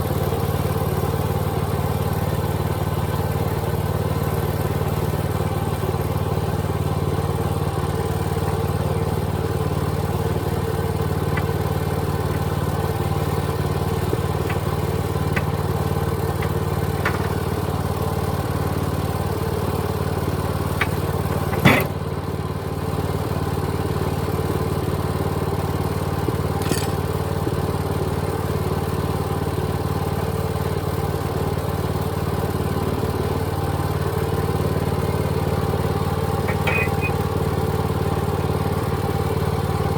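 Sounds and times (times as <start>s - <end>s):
engine idling: 0.0s - 39.9s
faint engine ticks: 0.0s - 39.9s
sharp engine knock: 19.2s - 22.1s.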